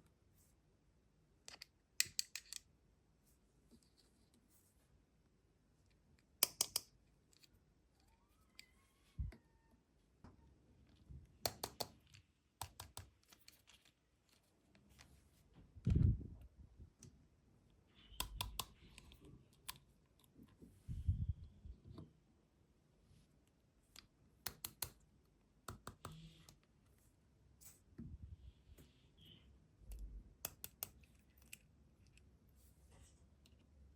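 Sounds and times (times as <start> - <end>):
faint squeak: 7.9 - 9.8
plastic clicks and taps: 11.4 - 13.1, 18.2 - 18.8.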